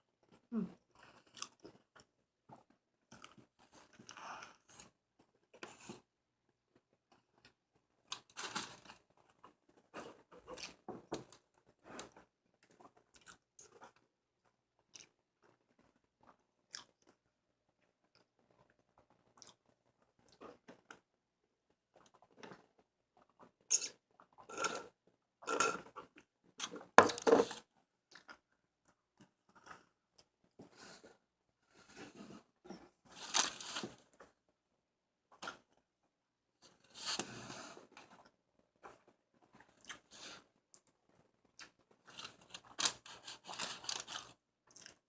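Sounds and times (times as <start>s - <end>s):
chewing and biting food: 14.9s - 17.2s, 41.6s - 45.0s.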